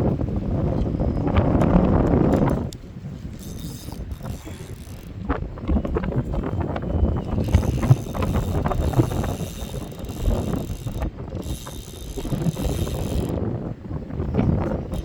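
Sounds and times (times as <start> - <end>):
wind on microphone: 0.0 - 15.0
mechanical clicking and rattling: 2.3 - 2.8, 3.4 - 5.2, 7.3 - 13.4, 14.4 - 15.0.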